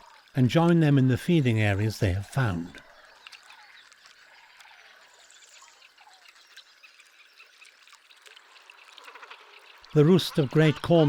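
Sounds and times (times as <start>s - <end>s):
small animal chirps and clicks: 3.1s - 9.2s.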